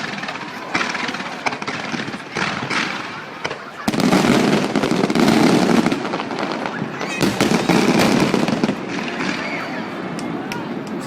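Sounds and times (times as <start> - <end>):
fireworks crackling: 0.0 - 11.0.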